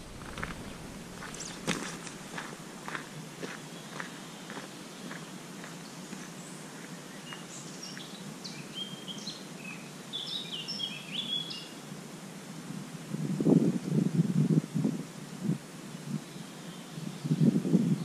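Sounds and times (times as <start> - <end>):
small bird chirping: 0.0 - 2.6
low background hiss: 0.0 - 18.0.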